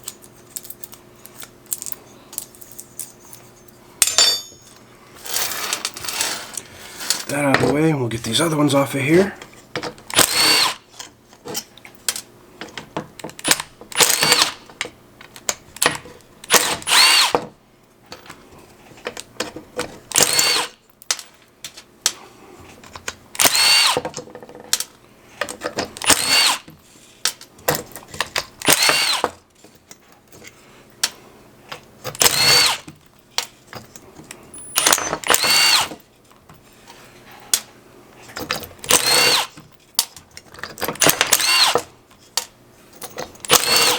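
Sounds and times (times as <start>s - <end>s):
cordless drill motor whine: 10.1s - 10.8s, 14.0s - 14.6s, 16.5s - 17.3s, 20.1s - 20.8s, 23.4s - 24.0s, 26.0s - 26.7s, 28.6s - 29.3s, 32.2s - 32.9s, 34.5s - 36.0s, 38.9s - 39.6s, 41.0s - 41.8s, 43.5s - 43.9s.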